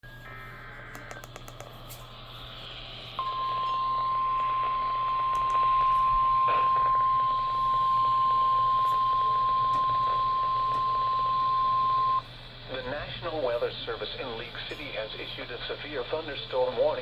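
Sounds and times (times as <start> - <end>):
high-pitched radio alarm tone: 0.0 - 1.4, 3.2 - 12.9.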